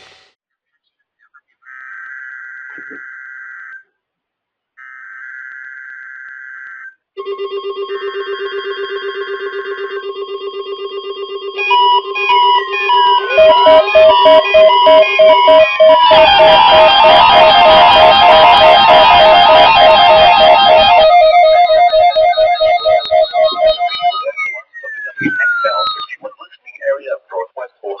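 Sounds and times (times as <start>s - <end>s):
pulsing electronic chord: 11.5s - 24.4s
stepping tones and sliding pitches: 11.6s - 26.1s
buzzy digital data bursts: 12.7s - 26.0s.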